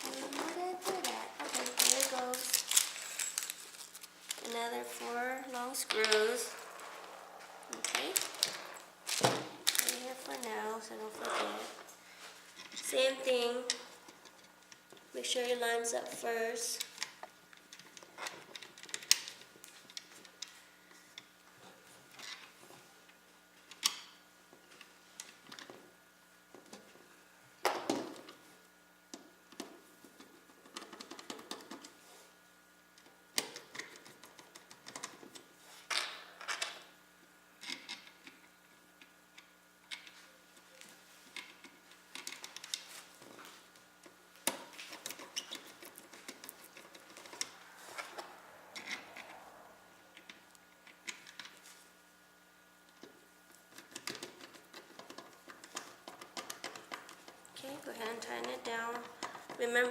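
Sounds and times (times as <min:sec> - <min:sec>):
hands handling computer parts: 0:00.1 - 0:04.5.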